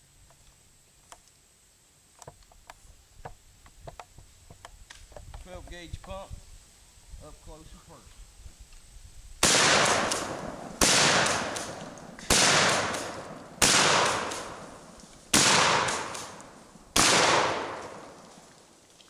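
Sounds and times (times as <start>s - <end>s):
shotgun shots echoing: 9.4s - 18.3s.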